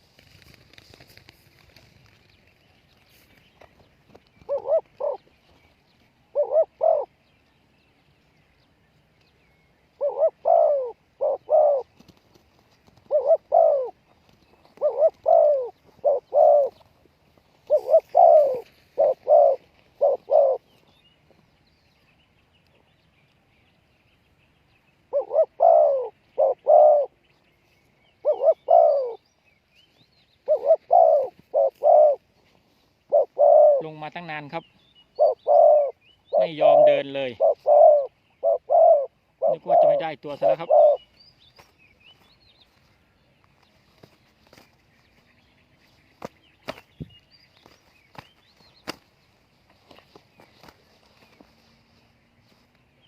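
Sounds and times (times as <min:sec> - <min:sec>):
dove cooing: 0:04.4 - 0:05.5, 0:06.3 - 0:07.3, 0:10.0 - 0:12.1, 0:12.9 - 0:16.9, 0:17.6 - 0:20.9, 0:25.1 - 0:27.2, 0:28.2 - 0:29.2, 0:30.4 - 0:32.3, 0:33.0 - 0:34.2, 0:35.1 - 0:41.1.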